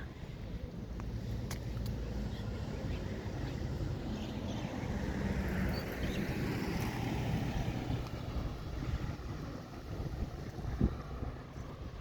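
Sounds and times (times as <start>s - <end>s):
wind buffeting microphone: 4.6s - 12.0s.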